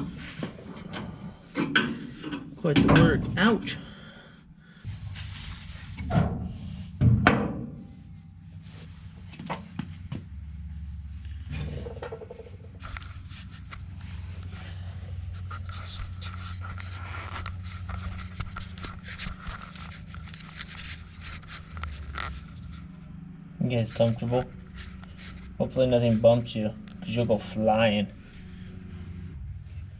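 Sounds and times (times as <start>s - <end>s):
steady low hum: 0.0s - 29.9s
small clicks and scrapes: 12.2s - 23.0s, 23.8s - 25.6s.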